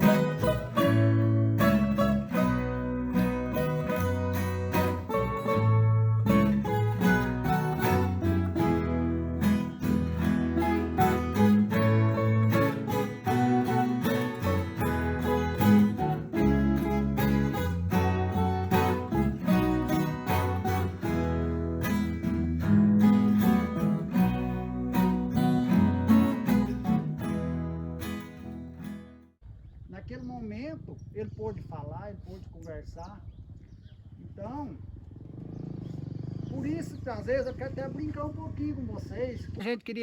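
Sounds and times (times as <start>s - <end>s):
acoustic guitar music: 0.0s - 29.4s.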